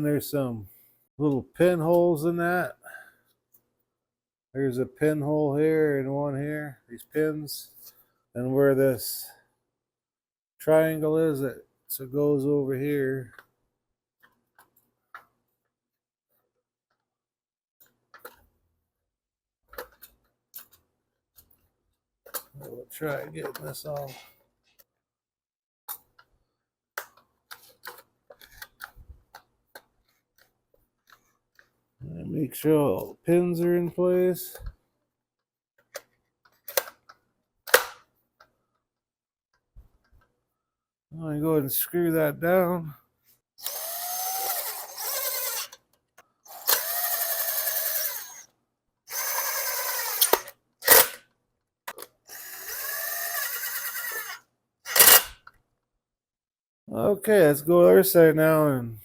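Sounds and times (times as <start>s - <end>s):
power drill driving screws: 43.6s - 45.8s, 46.4s - 48.5s, 49.1s - 51.2s, 52.3s - 55.4s.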